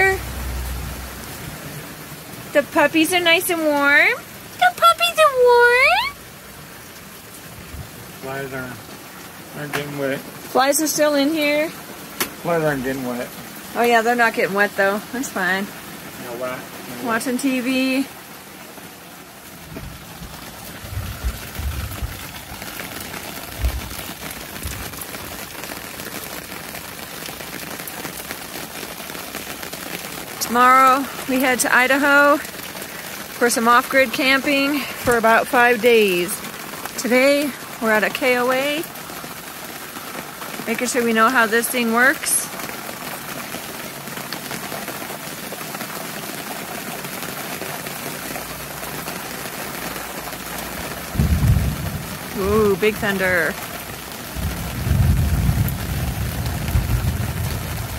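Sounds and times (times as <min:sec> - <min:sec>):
steady rain falling: 0:00.0 - 0:57.9
thunder rumble and thunderclap: 0:19.7 - 0:22.4, 0:23.4 - 0:25.0, 0:51.1 - 0:53.0, 0:54.3 - 0:57.9
low thumps: 0:23.5 - 0:24.0, 0:51.2 - 0:52.3, 0:54.4 - 0:57.9.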